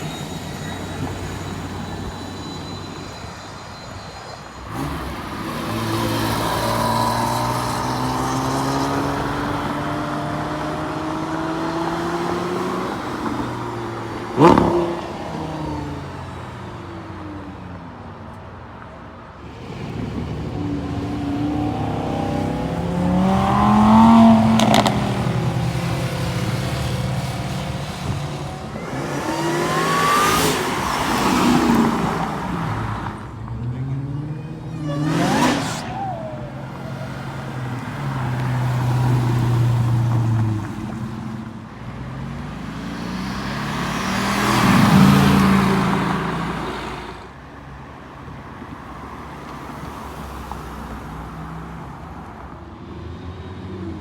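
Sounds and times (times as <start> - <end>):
car engine accelerating hard: 4.7 - 16.2, 19.4 - 47.5.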